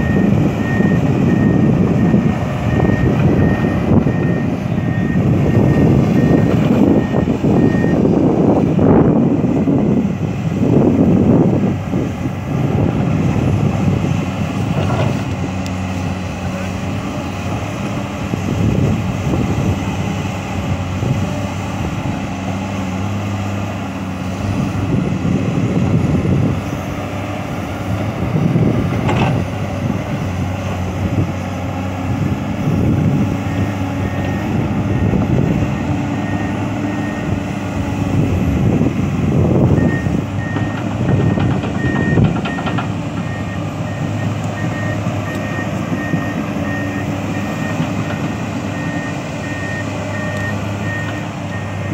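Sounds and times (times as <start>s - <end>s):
reversing beeper: 0.0s - 8.1s, 39.7s - 51.9s
excavator diesel engine working: 0.0s - 51.9s.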